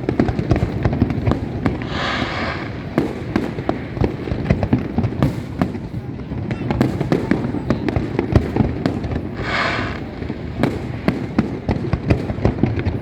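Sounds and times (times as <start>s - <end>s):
fireworks bangs: 0.0s - 13.0s
firework hiss: 1.4s - 4.4s, 9.3s - 11.1s.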